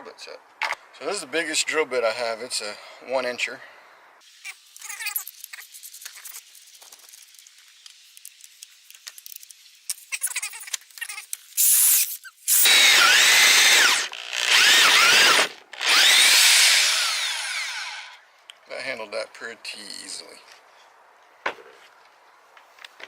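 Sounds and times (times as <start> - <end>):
hammer drill boring into wood: 11.6 - 18.2.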